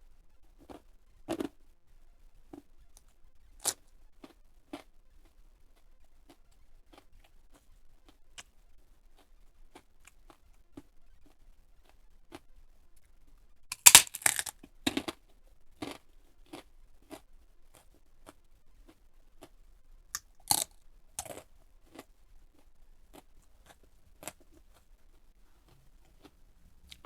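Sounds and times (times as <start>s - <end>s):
crunching bites: 13.7s - 15.2s, 20.2s - 22.1s.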